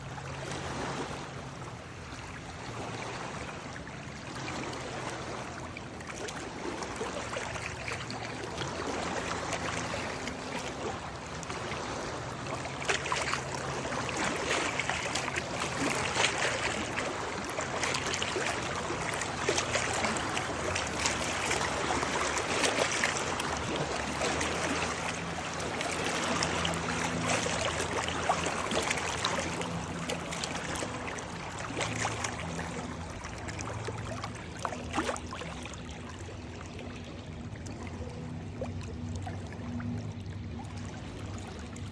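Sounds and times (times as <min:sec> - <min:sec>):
water flowing and splashing: 0:00.0 - 0:41.9.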